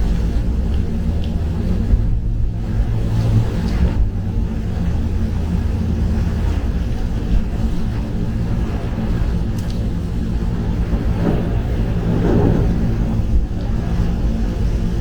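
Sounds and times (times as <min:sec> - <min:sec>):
tyres rumbling on wet road: 0:00.0 - 0:15.0
rain and spray hissing: 0:08.1 - 0:14.7.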